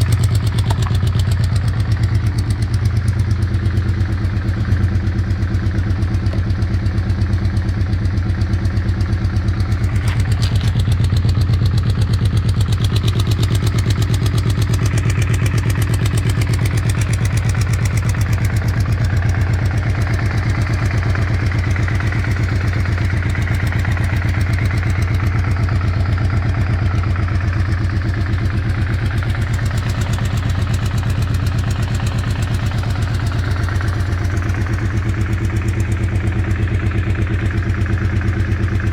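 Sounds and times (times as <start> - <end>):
engine idling: 0.0 - 38.9.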